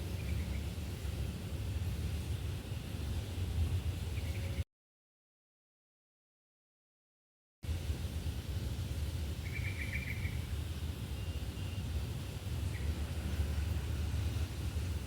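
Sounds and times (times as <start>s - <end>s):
small bird trilling: 9.4s - 10.4s.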